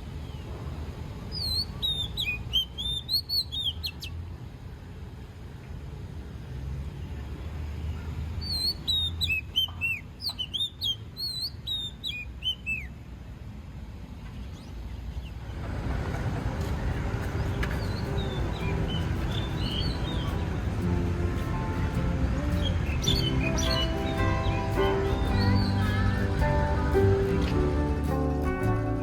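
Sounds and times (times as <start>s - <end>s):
songbird whistling: 1.3s - 4.1s, 8.4s - 12.9s, 17.6s - 27.6s
low background rumble: 15.2s - 29.0s.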